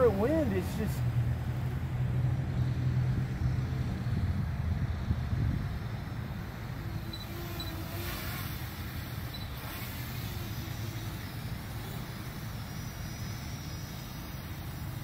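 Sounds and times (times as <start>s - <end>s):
drone propellers whining: 0.0s - 15.0s
wind noise on microphone: 2.4s - 12.0s.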